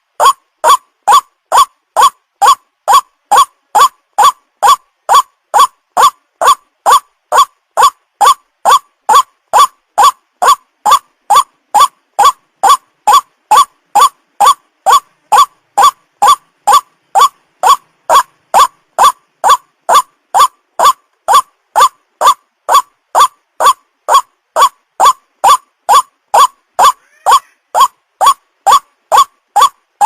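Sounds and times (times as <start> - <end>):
waterhen calling: 0.0 - 29.8.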